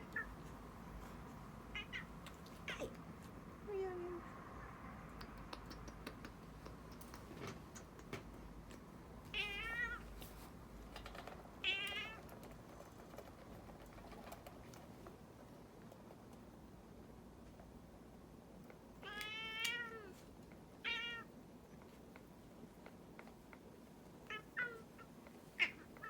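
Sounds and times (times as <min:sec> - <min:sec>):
cat meowing: 0:01.7 - 0:03.0, 0:09.4 - 0:10.1, 0:11.6 - 0:12.2, 0:19.0 - 0:20.2, 0:20.8 - 0:21.3, 0:24.3 - 0:26.0.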